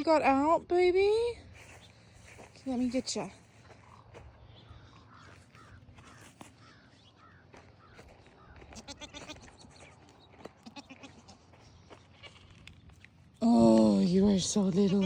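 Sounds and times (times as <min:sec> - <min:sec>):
goat kids bleating: 0:04.7 - 0:12.6.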